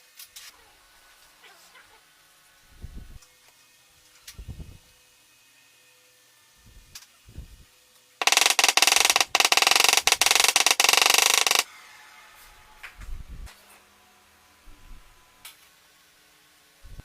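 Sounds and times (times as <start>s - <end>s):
power sander buzzing: 8.2s - 11.6s.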